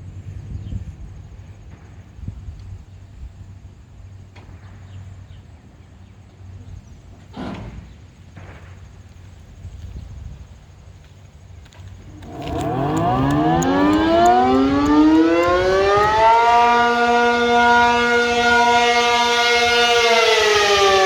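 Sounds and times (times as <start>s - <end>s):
warning siren winding up: 12.1s - 21.0s.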